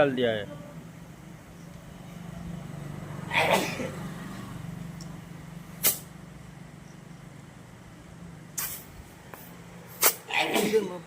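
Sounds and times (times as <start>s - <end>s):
air hissing: 5.7s - 6.2s, 8.5s - 10.3s.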